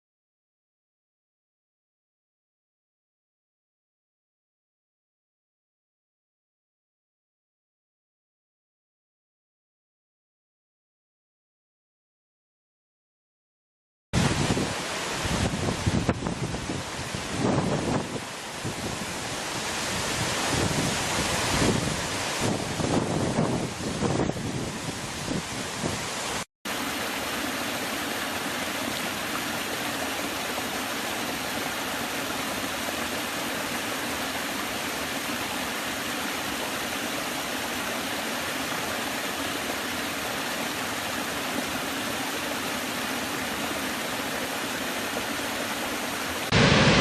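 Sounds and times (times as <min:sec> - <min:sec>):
waterfall roar: 0:14.2 - 0:47.0.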